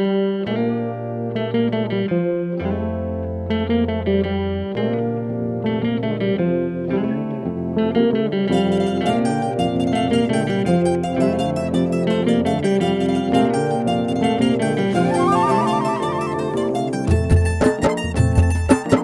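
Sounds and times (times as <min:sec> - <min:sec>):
plucked guitar melody: 0:00.0 - 0:19.0
held bass notes: 0:14.6 - 0:17.6.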